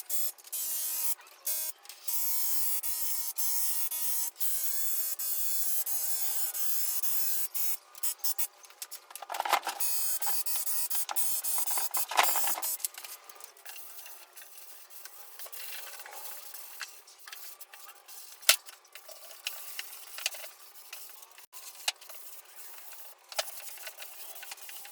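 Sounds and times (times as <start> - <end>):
rubbing and scraping: 11.1 - 13.6.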